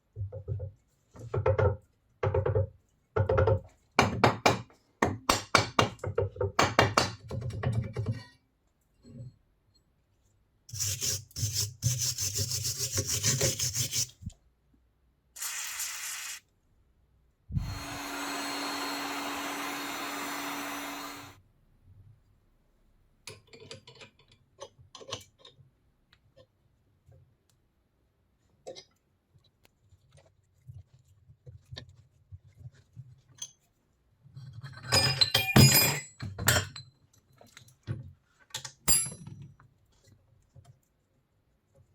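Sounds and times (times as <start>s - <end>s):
filing strokes on metal: 10.7s - 14.2s.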